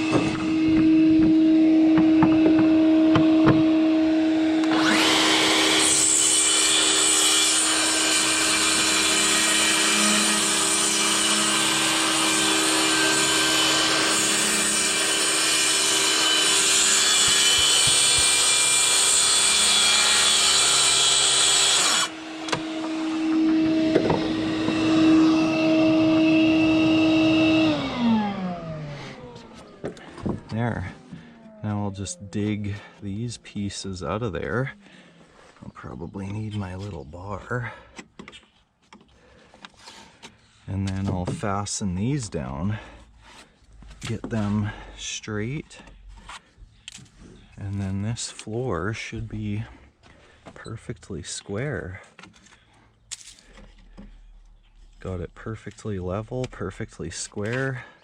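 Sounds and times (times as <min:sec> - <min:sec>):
saw motor winding down: 0:00.0 - 0:33.0
track saw whining: 0:00.0 - 0:35.3
saw cutting wooden boards: 0:00.0 - 0:58.0.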